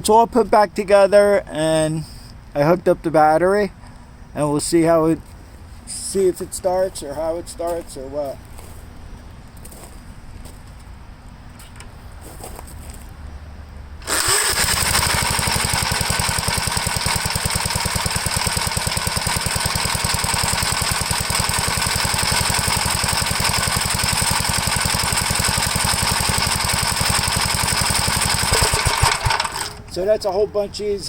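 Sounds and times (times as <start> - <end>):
tractor engine running: 14.0 - 30.5.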